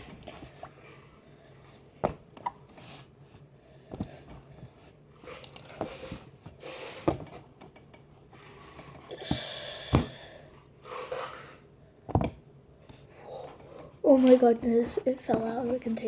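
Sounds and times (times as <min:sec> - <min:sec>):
scraping and rustling: 0:00.0 - 0:09.1, 0:10.8 - 0:11.7
objects knocking and clunking: 0:05.4 - 0:10.3, 0:12.1 - 0:12.5.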